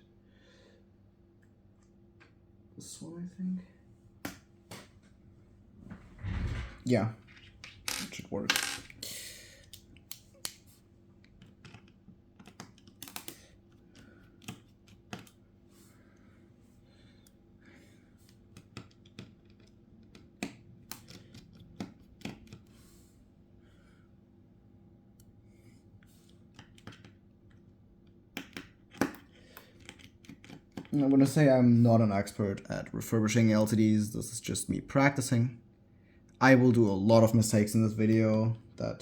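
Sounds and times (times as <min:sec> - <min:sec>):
screwdriver clicks and taps: 0:11.4 - 0:15.4, 0:18.6 - 0:22.6, 0:28.0 - 0:29.2, 0:29.8 - 0:31.0.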